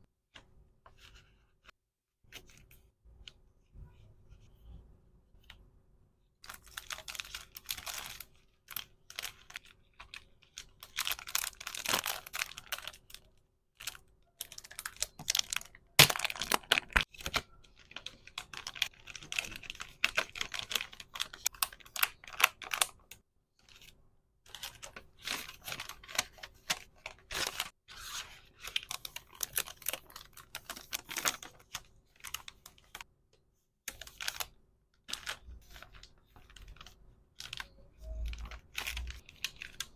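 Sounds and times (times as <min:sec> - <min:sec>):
packaging crinkling and tearing: 0:06.4 - 0:23.1, 0:24.5 - 0:33.0, 0:35.1 - 0:39.9.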